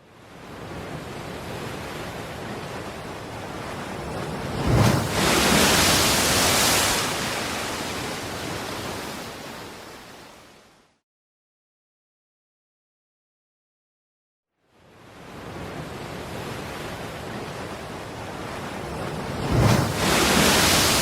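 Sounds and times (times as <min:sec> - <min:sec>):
sea waves washing on shore: 0:00.3 - 0:10.6, 0:15.1 - 0:21.0.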